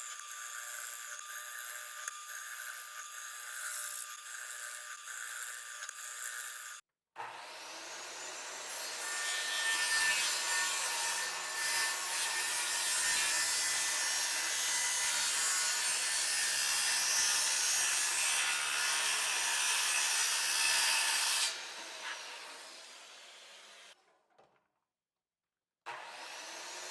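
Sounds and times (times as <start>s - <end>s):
electric power tool cutting wood: 0.0s - 24.0s, 25.9s - 26.9s.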